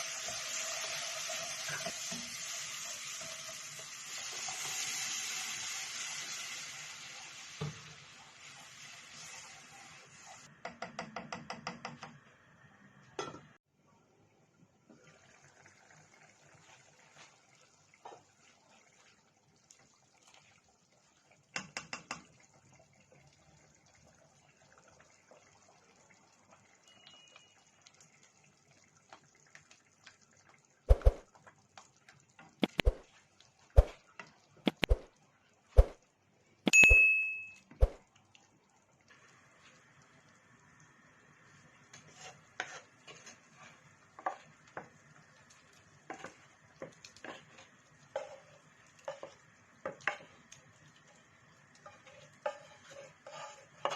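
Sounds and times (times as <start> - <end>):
sharp knocks of cookware: 10.6 - 12.2, 21.5 - 22.3.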